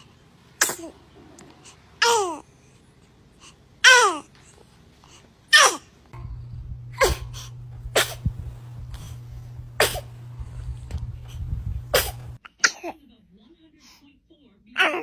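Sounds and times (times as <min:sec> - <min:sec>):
baby sneezing: 0:00.6 - 0:01.0, 0:02.0 - 0:02.4, 0:03.8 - 0:04.3, 0:05.5 - 0:05.9, 0:07.0 - 0:08.4, 0:09.8 - 0:10.2, 0:11.9 - 0:13.0
low steady hum: 0:06.1 - 0:12.4.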